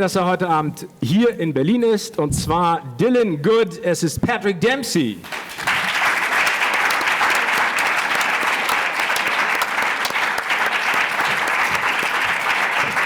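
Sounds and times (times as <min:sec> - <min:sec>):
audience applause: 0:05.2 - 0:13.0.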